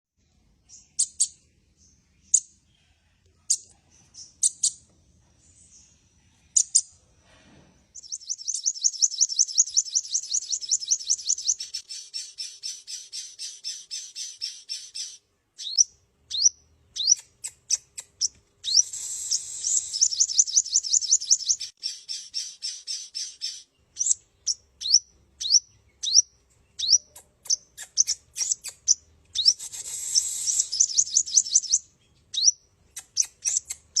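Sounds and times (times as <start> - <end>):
sunbird chirps: 0.2 - 7.0, 7.9 - 34.0
sunbird trills: 8.0 - 34.0.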